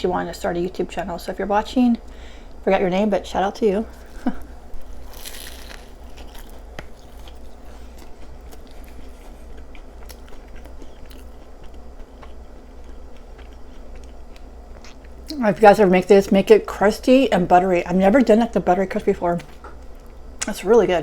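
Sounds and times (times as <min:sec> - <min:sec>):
chewing with crunches: 0:03.9 - 0:15.4
crunchy bite into bun: 0:04.0 - 0:15.1.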